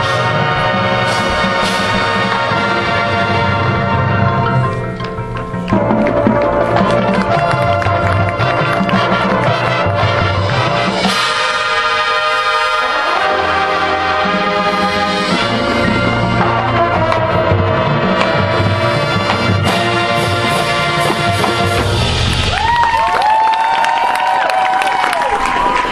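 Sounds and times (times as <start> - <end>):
marching band playing: 0.0 - 24.5
crowd cheering and whooping: 22.1 - 25.9.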